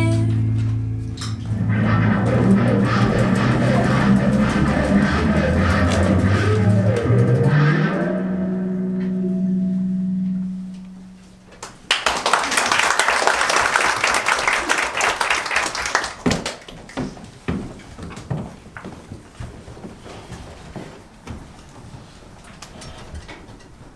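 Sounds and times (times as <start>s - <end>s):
guitar chord ringing: 0.0s - 11.9s
dense noisy clatter: 0.6s - 9.1s
scattered knocks: 1.4s - 8.2s.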